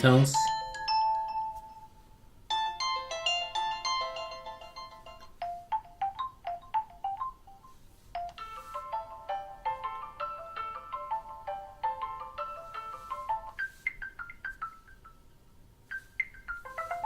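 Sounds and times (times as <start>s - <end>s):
phone ringtone chimes: 0.1s - 17.0s.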